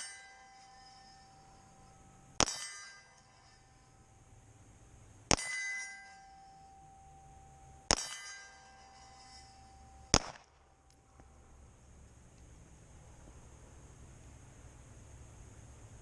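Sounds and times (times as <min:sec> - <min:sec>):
steel plate ringing: 0:00.0 - 0:04.4, 0:05.3 - 0:10.9
pistol shots: 0:02.4 - 0:02.8, 0:05.3 - 0:05.8, 0:07.9 - 0:08.4, 0:10.1 - 0:10.6.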